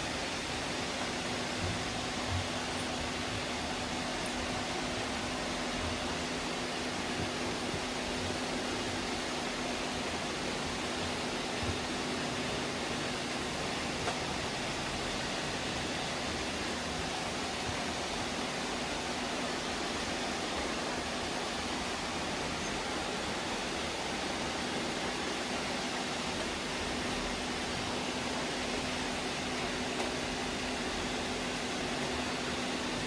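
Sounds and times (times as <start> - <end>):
low constant hum: 0.0 - 33.0.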